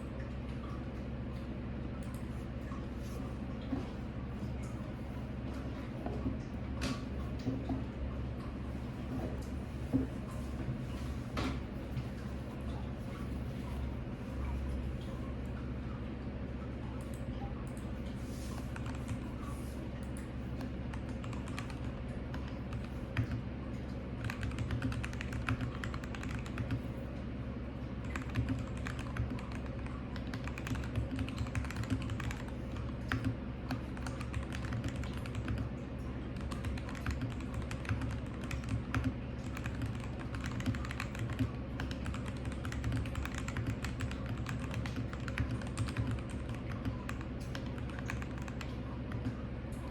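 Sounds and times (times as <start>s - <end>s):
low steady hum: 0.0s - 49.9s
mechanical keyboard typing: 18.8s - 19.3s, 20.6s - 23.4s, 24.2s - 26.9s, 28.0s - 35.6s, 36.3s - 49.2s.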